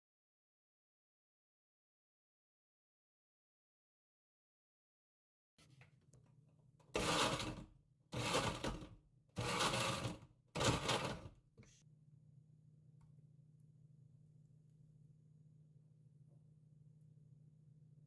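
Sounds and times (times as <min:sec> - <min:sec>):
faint low hum: 0:11.6 - 0:18.0.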